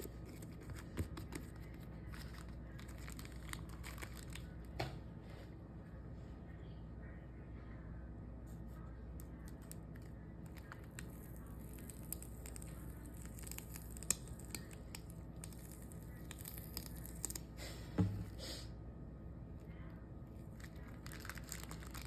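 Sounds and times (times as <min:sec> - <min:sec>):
hands handling slime packaging: 0:00.0 - 0:04.8.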